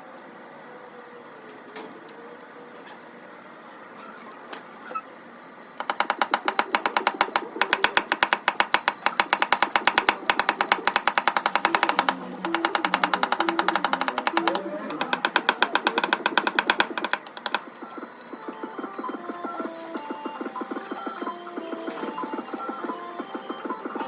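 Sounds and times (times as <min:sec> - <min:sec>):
faint clicks: 0:05.8 - 0:24.0
rapid hammer tapping on car panel: 0:05.8 - 0:24.0.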